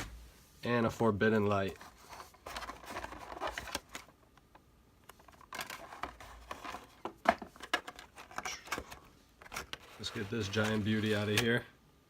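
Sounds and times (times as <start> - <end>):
cardboard packaging rustling: 1.3 - 4.2, 5.1 - 11.6.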